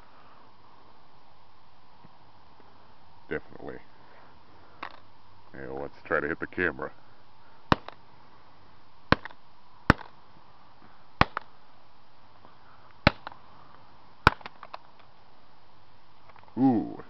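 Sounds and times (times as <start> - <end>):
sharp blows striking phone: 7.7 - 8.0, 9.1 - 10.2, 11.2 - 11.5, 13.0 - 13.4, 14.2 - 14.7.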